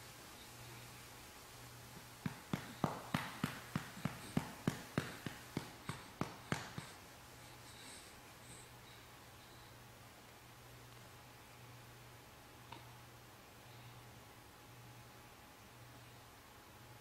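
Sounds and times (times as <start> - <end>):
low steady hum: 0.0 - 17.0
hand patting baby's back: 2.2 - 7.0.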